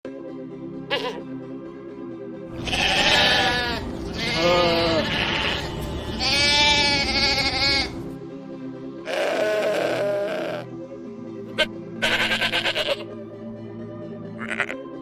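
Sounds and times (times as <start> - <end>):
background music: 0.0 - 15.0
sheep bleating: 0.9 - 1.2, 2.5 - 8.0, 9.0 - 10.7, 11.6 - 13.1, 14.4 - 14.8.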